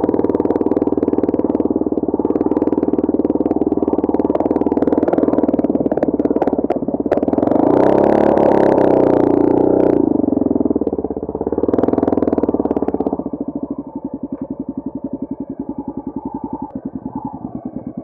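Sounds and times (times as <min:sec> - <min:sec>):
motorcycle engine revving and idling: 0:00.0 - 0:18.0.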